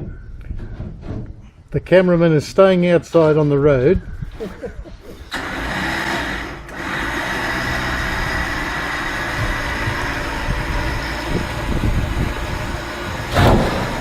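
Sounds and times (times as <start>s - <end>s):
vehicle engine idling: 7.2s - 14.0s.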